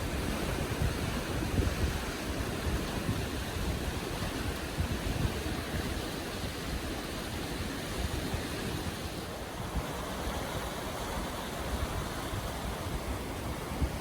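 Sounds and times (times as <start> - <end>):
roar of rushing water: 0.0 - 14.0.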